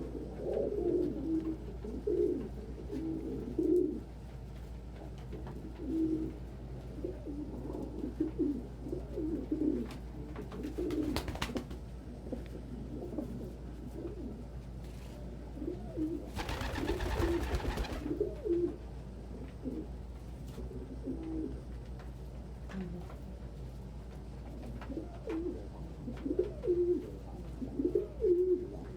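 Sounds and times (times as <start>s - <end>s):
pigeons cooing: 0.0s - 4.1s, 5.6s - 10.0s, 15.6s - 18.8s, 24.9s - 28.9s
rustling: 16.4s - 18.2s.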